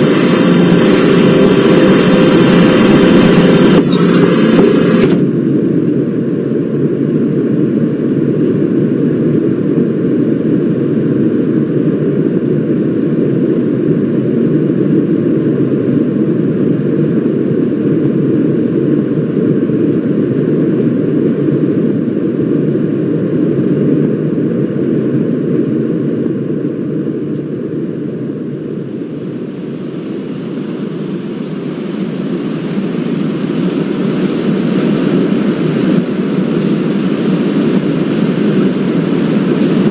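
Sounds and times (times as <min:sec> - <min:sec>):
airliner cabin engine rumble: 0:00.0 - 0:11.8, 0:12.4 - 0:39.9.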